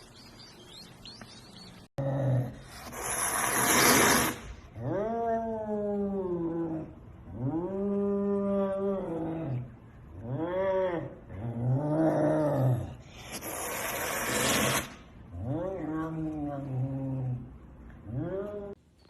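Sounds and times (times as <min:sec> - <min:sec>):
animal hissing: 0:02.6 - 0:04.5, 0:13.1 - 0:15.0.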